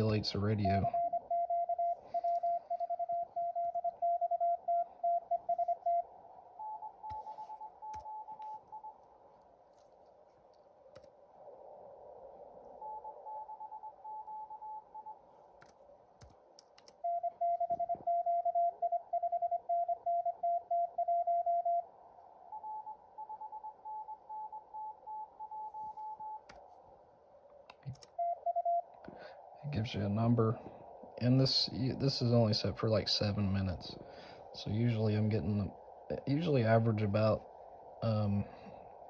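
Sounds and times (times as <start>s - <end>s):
morse code beeps: 0.0s - 9.0s, 17.0s - 21.8s, 28.0s - 28.9s
band noise hiss: 29.1s - 38.9s.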